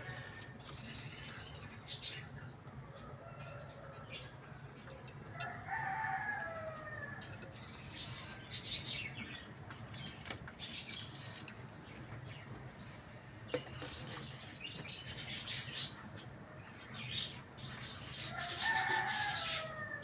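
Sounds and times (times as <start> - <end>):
rooster crowing: 5.4 - 7.2, 18.3 - 20.0.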